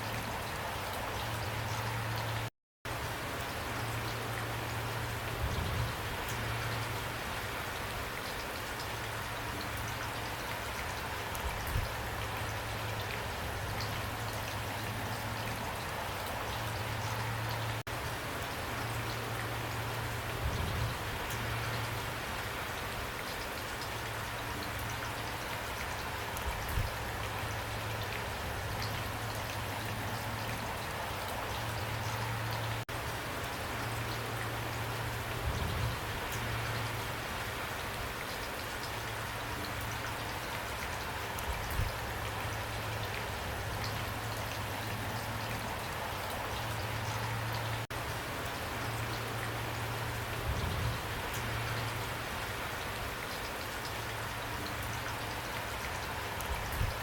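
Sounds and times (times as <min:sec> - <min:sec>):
heavy rain pouring: 0:00.0 - 0:57.0.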